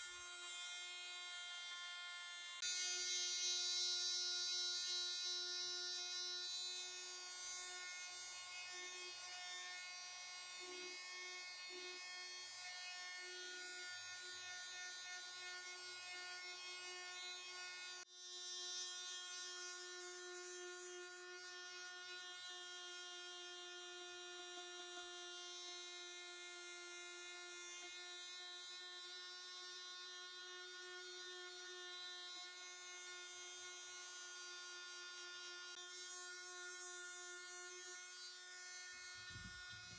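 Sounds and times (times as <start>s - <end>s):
electric sander buzzing: 29.0s - 39.9s.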